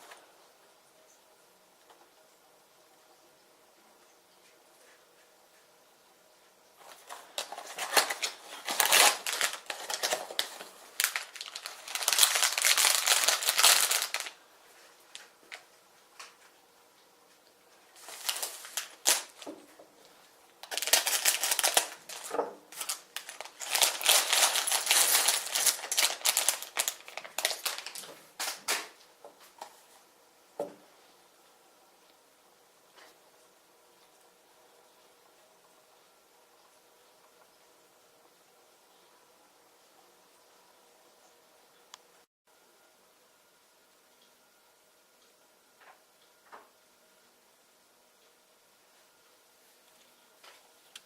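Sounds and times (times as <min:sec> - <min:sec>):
plastic packaging crinkling: 0:06.8 - 0:16.4, 0:18.0 - 0:19.7, 0:20.6 - 0:29.0.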